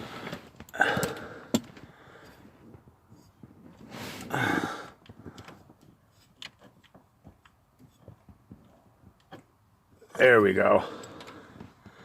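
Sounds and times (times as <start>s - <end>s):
man sighing heavily: 0.7s - 2.3s, 4.2s - 5.0s
faint clicks and taps: 5.0s - 9.5s.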